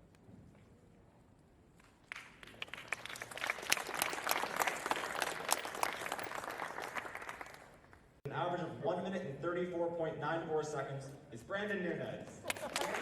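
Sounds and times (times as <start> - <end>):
audience applauding: 2.0 - 8.0, 12.5 - 13.0.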